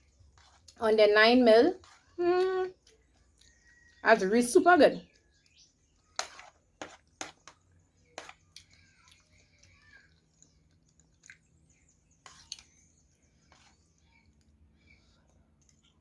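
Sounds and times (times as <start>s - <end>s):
chewing: 1.8s - 4.0s, 6.9s - 16.0s.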